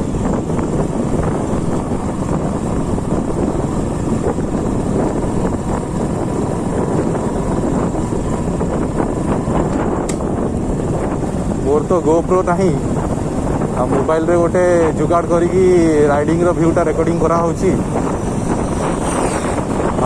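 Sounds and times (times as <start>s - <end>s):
motorcycle engine running: 0.0s - 20.0s
wind rushing over microphone: 0.0s - 20.0s.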